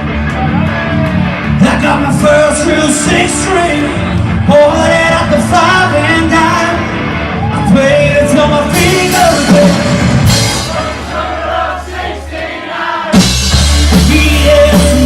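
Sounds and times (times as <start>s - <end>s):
live band playing: 0.0s - 15.0s
person singing: 7.6s - 11.2s, 13.8s - 15.0s.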